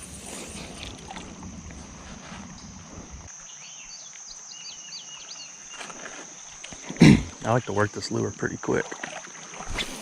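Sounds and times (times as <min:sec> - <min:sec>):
water splashing and sloshing: 0:00.0 - 0:03.3, 0:08.6 - 0:10.0
steady high hiss: 0:00.0 - 0:08.6, 0:09.6 - 0:10.0.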